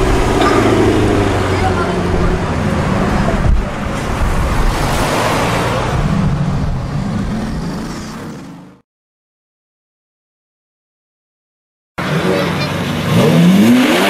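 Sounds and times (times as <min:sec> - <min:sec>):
exhaust pop: 0:00.0 - 0:01.7
car engine running hard: 0:00.0 - 0:08.8, 0:12.0 - 0:14.0.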